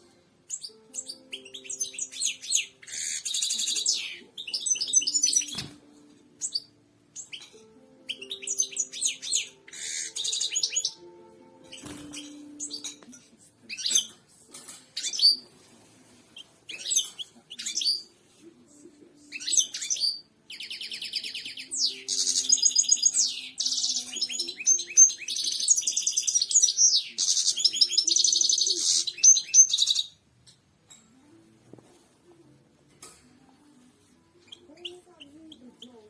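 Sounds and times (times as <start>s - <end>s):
finch singing trills: 0.5s - 5.8s, 6.4s - 13.0s, 19.3s - 30.2s.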